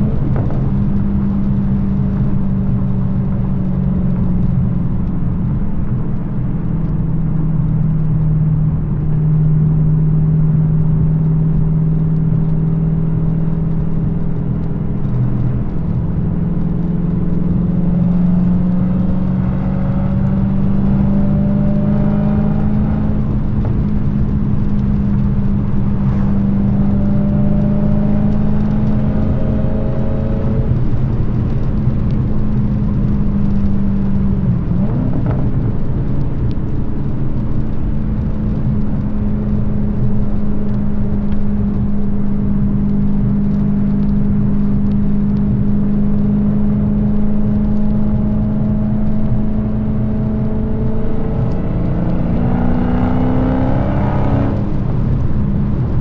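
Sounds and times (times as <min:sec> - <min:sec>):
car engine exhaust drone: 0:00.0 - 0:56.0
faint engine whine: 0:00.0 - 0:56.0.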